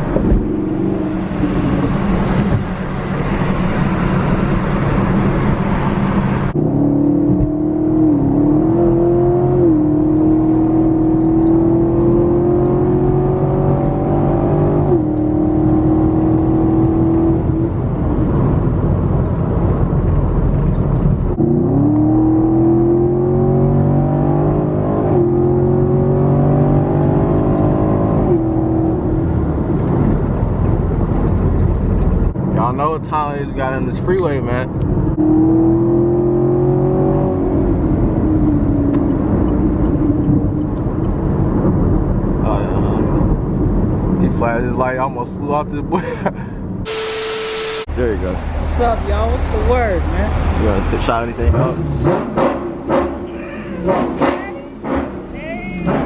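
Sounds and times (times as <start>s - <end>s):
car engine accelerating: 0.0s - 45.9s, 46.8s - 56.0s
loud hiss: 46.9s - 47.9s.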